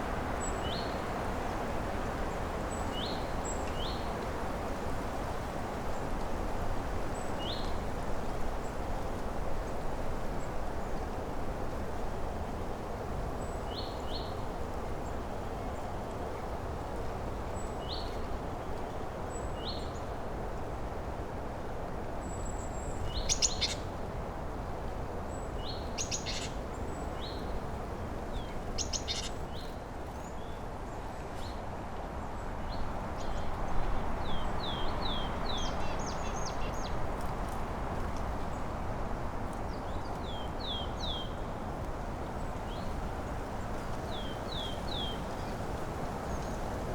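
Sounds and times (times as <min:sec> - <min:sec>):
songbirds calling: 0:22.2 - 0:24.0, 0:25.3 - 0:30.6, 0:32.6 - 0:37.1, 0:39.6 - 0:41.6, 0:42.2 - 0:46.7.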